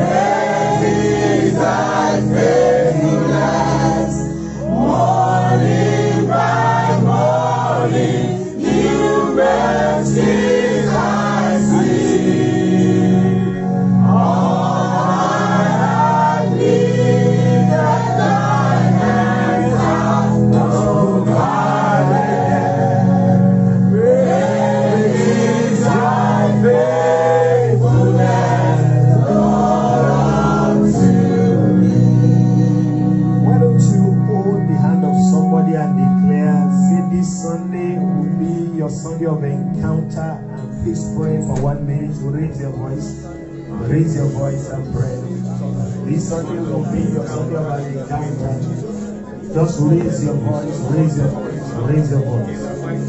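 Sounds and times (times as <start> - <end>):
choir singing gospel song: 0.0 - 38.9
instrumental backing: 0.0 - 53.0.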